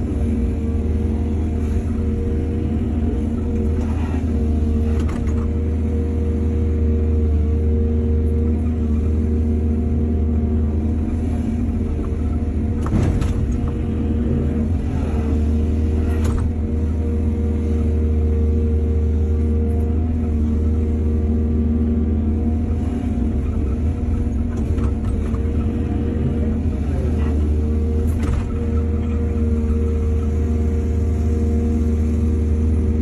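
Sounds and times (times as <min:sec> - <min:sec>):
excavator diesel engine running: 0:00.0 - 0:33.0
excavator bucket clanking: 0:12.0 - 0:13.8.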